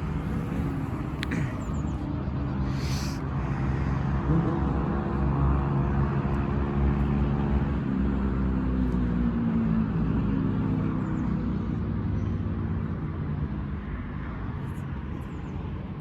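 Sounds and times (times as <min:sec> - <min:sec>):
vehicle engine humming: 0:00.0 - 0:03.2.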